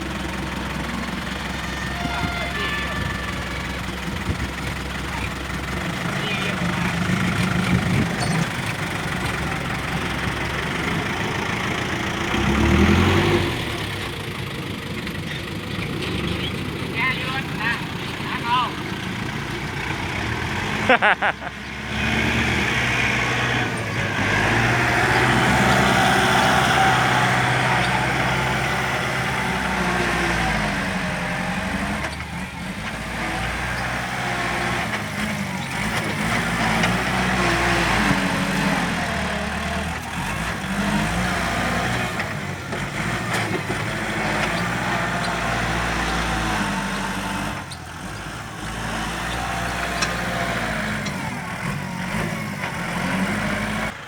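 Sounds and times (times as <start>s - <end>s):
heavy machinery diesel engine: 0.0s - 54.0s.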